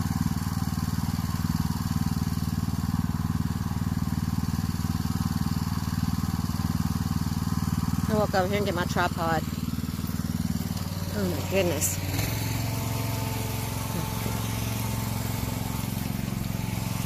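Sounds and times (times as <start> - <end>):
vehicle engine running steadily: 0.0 - 17.0.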